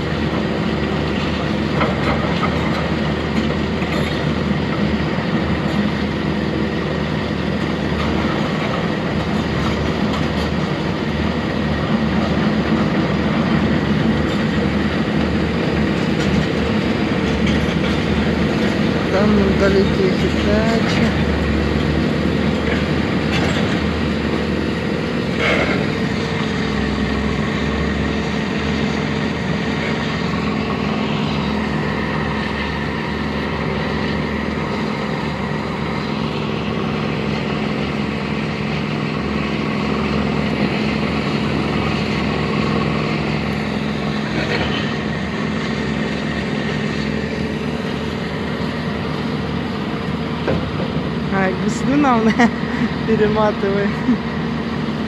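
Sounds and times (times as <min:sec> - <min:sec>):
heavy vehicle engine droning: 0:00.0 - 0:55.0.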